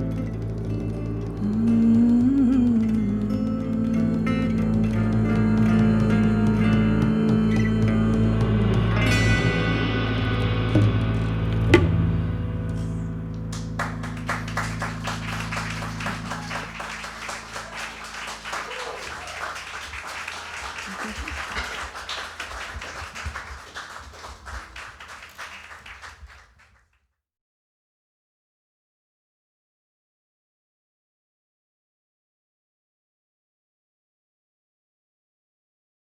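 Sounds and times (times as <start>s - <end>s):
audience applause: 0.0s - 9.1s, 12.7s - 26.8s
jazz band chord ringing: 8.6s - 21.0s
sharp drum or cymbal accent: 9.0s - 12.8s.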